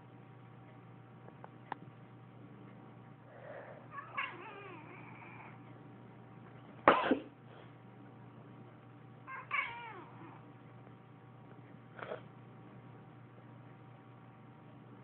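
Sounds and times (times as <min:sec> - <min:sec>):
cat meowing: 0:03.9 - 0:05.6, 0:09.3 - 0:10.4
person sneezing: 0:06.9 - 0:07.3.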